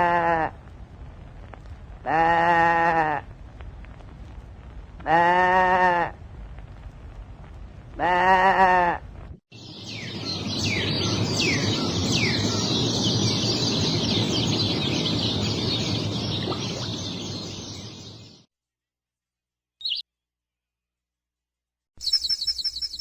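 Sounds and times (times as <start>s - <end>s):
flock of birds chirping: 9.5s - 18.4s.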